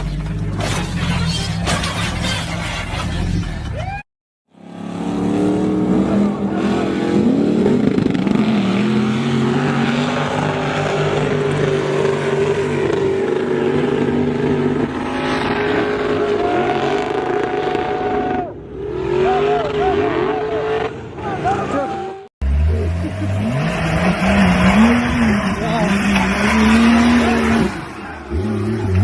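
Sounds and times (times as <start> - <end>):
vehicle engine under load: 0.0 - 3.8.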